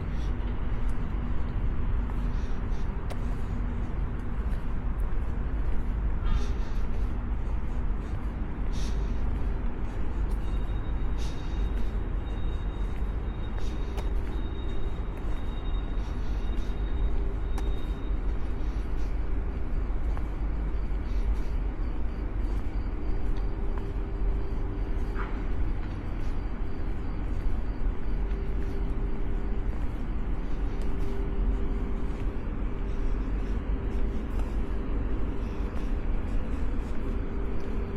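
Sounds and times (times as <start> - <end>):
faint steady hum: 0.0 - 37.9
low outdoor rumble: 0.0 - 37.9.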